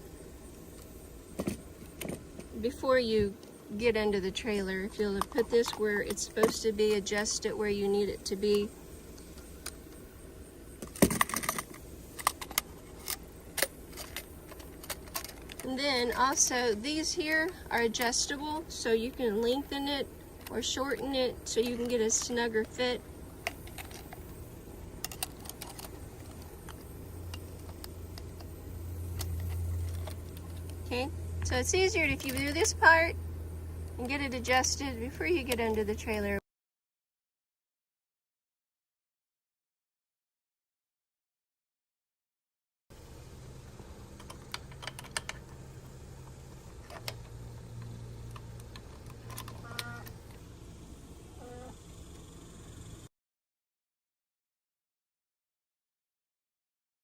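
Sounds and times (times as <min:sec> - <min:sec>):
low steady rumble: 0:00.0 - 0:36.4
steady low hum: 0:00.0 - 0:36.4, 0:42.9 - 0:53.1.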